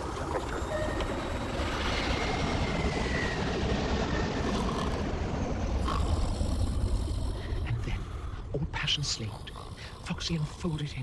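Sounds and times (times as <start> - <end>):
jet engines roaring: 0.0 - 7.6.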